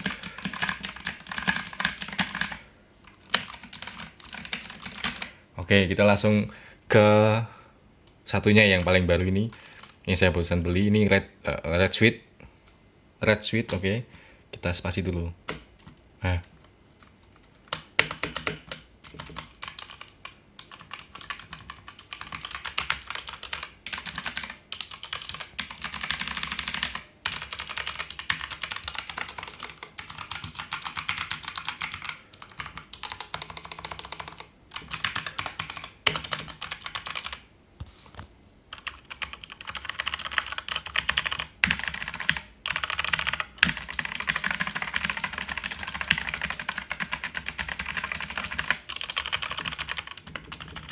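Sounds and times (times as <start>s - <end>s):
mechanical keyboard typing: 0.0s - 2.6s, 3.2s - 5.4s, 8.8s - 10.0s, 17.4s - 37.5s, 38.7s - 50.9s.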